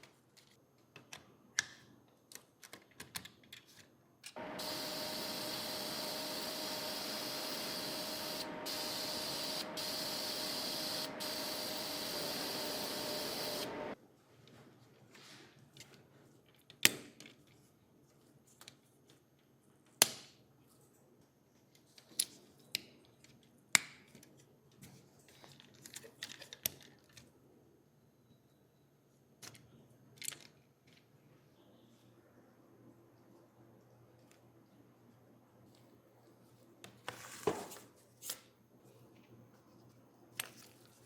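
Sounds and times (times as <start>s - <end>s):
paint spray hissing: 4.4s - 14.0s.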